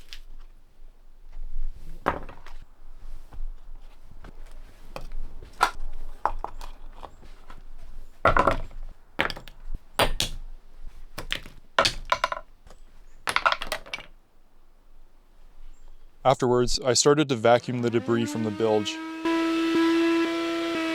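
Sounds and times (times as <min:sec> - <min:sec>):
knocks and thumps on wood: 0:01.3 - 0:16.2.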